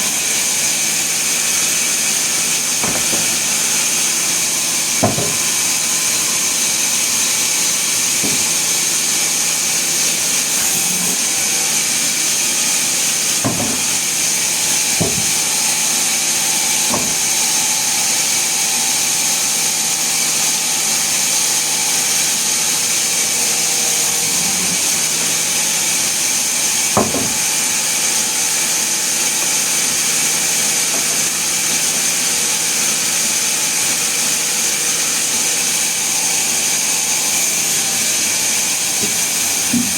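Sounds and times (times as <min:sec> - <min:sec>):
sawmill saw hissing: 0:00.0 - 0:39.9
knocks: 0:02.8 - 0:03.5, 0:05.0 - 0:05.5, 0:13.4 - 0:14.0, 0:27.0 - 0:27.4.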